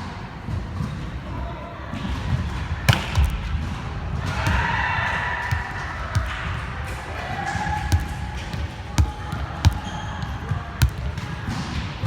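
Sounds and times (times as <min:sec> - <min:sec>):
volleyball being hit: 0:02.7 - 0:12.0.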